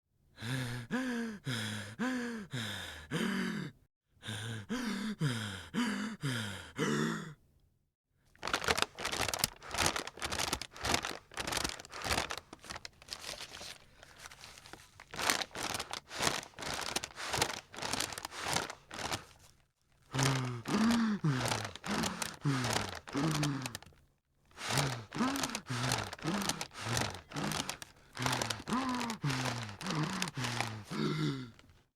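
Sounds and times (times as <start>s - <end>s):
person breathing into paper bag: 0.4s - 6.7s, 8.4s - 31.9s
paper bag crinkling: 8.4s - 31.7s.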